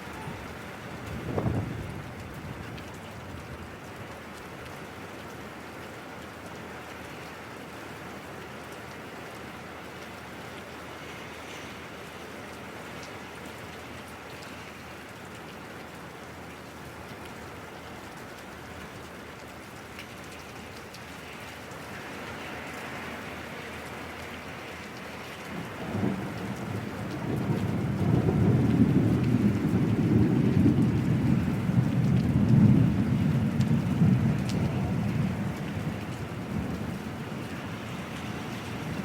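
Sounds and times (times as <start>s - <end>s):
steady rain falling: 0.0s - 39.0s
deep roll of thunder: 1.0s - 2.2s, 25.6s - 37.0s.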